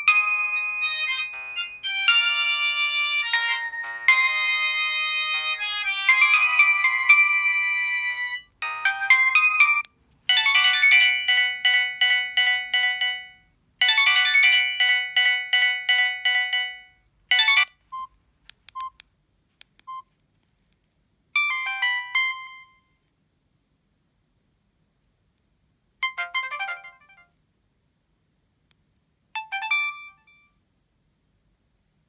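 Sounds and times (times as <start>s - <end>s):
electronic ringtone melodies: 0.0s - 17.7s, 21.4s - 22.8s, 26.0s - 27.3s, 29.4s - 30.4s.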